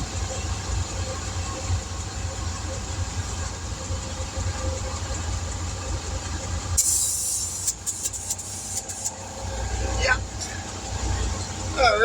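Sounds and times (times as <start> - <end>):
low machine drone: 0.0 - 12.0
loud rush of compressed air: 6.8 - 9.3
sputtering bursts of air: 6.8 - 9.3.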